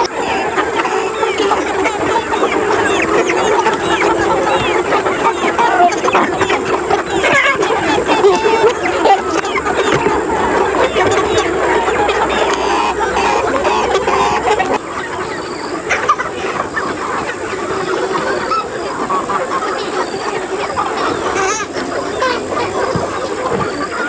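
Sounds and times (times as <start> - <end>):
chickens clucking: 0.0 - 24.0.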